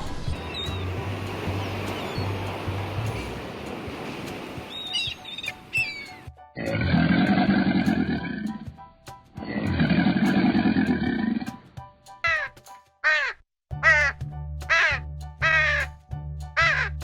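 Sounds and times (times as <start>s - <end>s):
animal roaring deeply: 6.6s - 8.5s, 9.4s - 11.6s.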